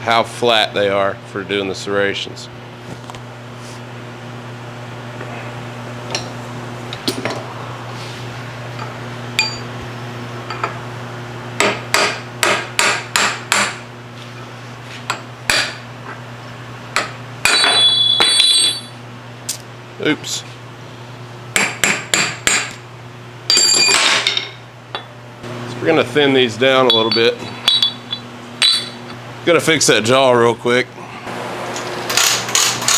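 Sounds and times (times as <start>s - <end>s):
steady low hum: 0.0s - 31.7s
loud ringing metallic clang: 17.4s - 19.0s, 26.8s - 29.2s.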